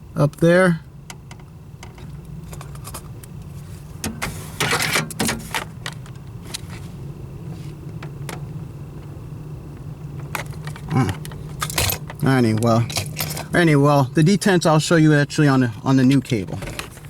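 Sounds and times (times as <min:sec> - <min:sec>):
steady low hum: 0:00.0 - 0:17.0
light metallic rattling and clicking: 0:10.2 - 0:13.6.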